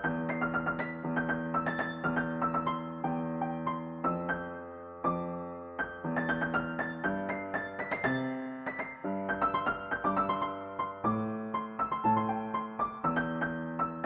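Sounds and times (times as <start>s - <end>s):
piano notes and chords: 0.0s - 14.0s.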